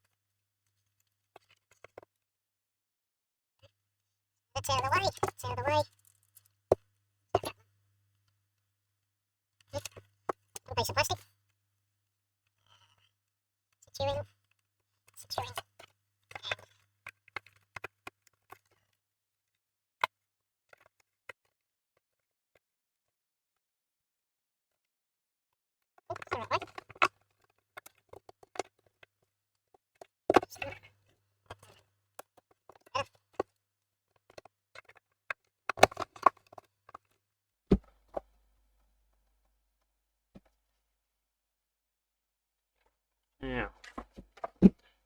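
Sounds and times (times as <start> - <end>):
plastic parts clicking and tapping: 34.2 - 38.4
plastic case clicking and knocking: 35.7 - 37.1.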